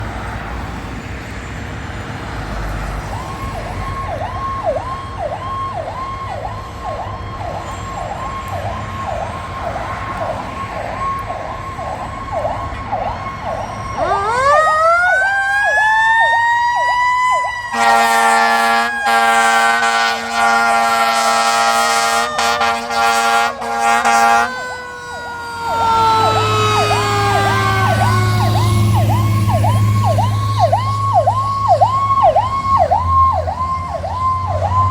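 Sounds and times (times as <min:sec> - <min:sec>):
diesel engine rumble: 0:00.0 - 0:34.9
siren wailing: 0:02.3 - 0:34.9
electronic siren yelp: 0:03.0 - 0:34.9
air horn blasts: 0:17.7 - 0:24.9.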